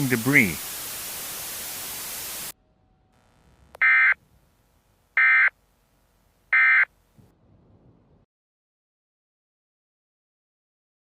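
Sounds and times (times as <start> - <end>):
static hiss: 0.0 - 2.6.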